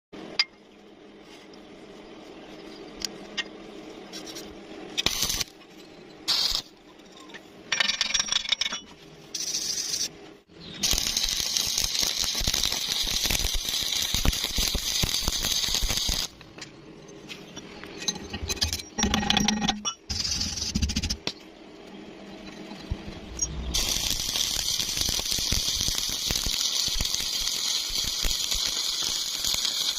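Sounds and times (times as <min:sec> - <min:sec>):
electric arc welding crackling: 0:05.0 - 0:05.5, 0:06.3 - 0:06.7, 0:10.8 - 0:16.4, 0:23.3 - 0:29.9.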